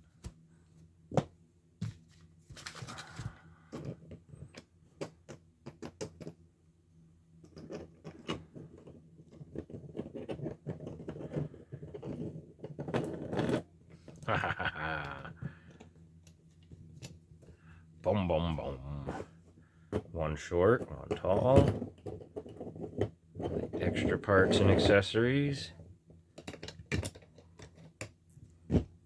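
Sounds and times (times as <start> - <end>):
packaging rustle: 2.5 - 3.4.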